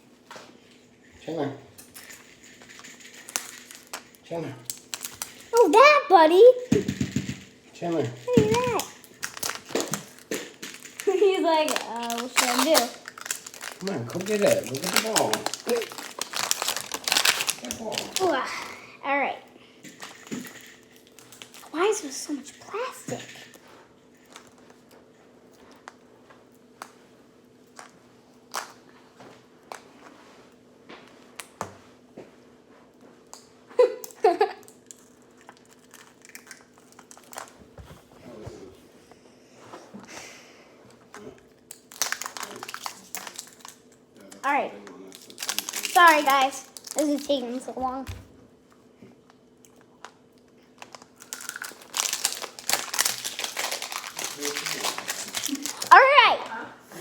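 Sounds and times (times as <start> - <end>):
plastic wrapper crinkling: 2.4 - 5.8, 7.9 - 18.5, 20.0 - 21.8, 34.8 - 37.6, 41.7 - 44.0, 45.0 - 47.7, 50.7 - 56.1.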